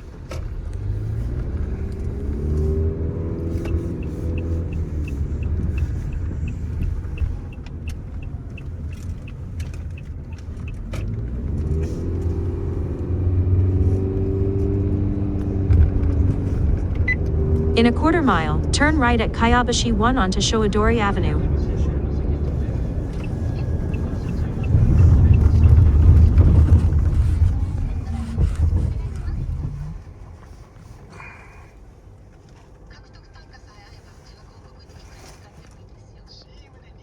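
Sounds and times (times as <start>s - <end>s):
car road and engine rumble: 0.0s - 37.0s
light regular ticking: 3.5s - 13.1s.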